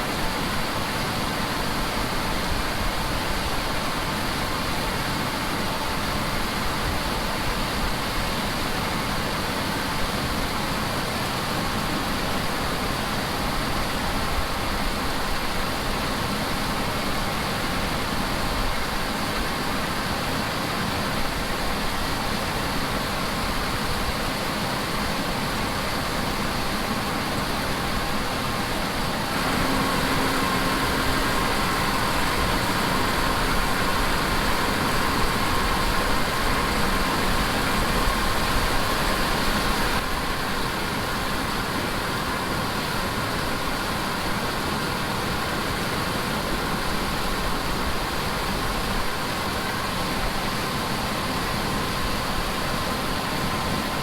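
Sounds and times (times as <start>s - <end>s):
engine and machinery running: 26.1s - 43.3s
low hum: 29.1s - 40.0s.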